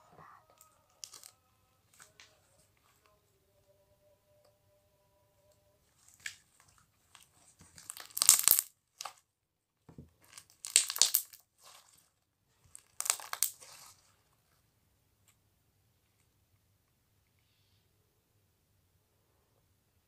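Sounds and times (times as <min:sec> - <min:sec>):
crinkling crunching handling noise: 0:00.9 - 0:03.0, 0:06.0 - 0:09.3, 0:10.0 - 0:14.6.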